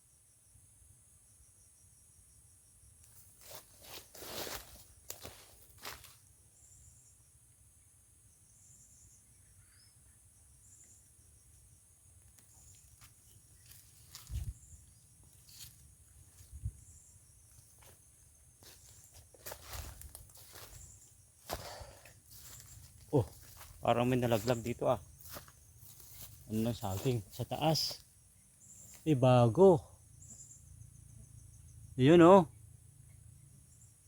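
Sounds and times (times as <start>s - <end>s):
insect chirps: 0.0s - 34.0s
footsteps through vegetation: 3.1s - 6.3s, 12.3s - 29.1s
high-pitched insect drone: 12.5s - 34.0s.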